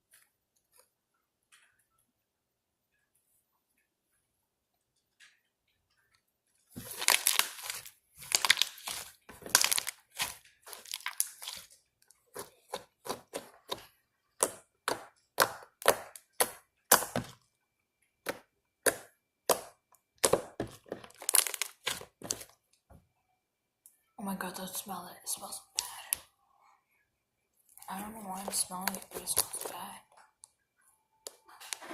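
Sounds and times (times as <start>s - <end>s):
slime popping: 6.8s - 11.7s, 18.2s - 22.5s
slime squishing and crackling: 6.8s - 17.3s, 18.8s - 22.5s, 28.1s - 29.8s.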